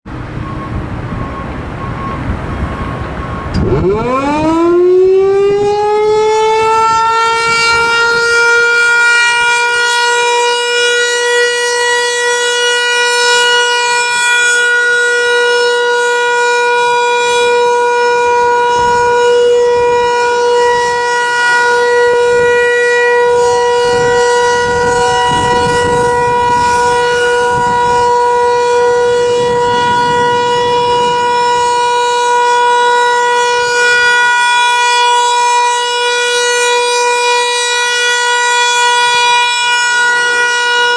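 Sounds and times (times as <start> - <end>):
warning siren steady tone: 0.0 - 40.9.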